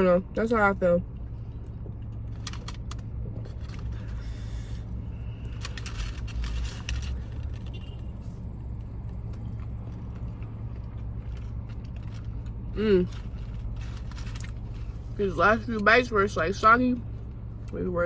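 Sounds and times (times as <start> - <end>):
food wrapper rustling: 5.5 - 7.7, 13.1 - 15.2.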